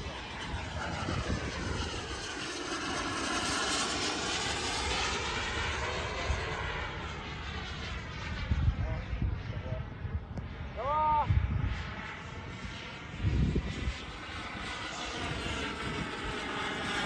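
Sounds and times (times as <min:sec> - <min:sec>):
model jet engine whine passing: 0:00.0 - 0:17.0.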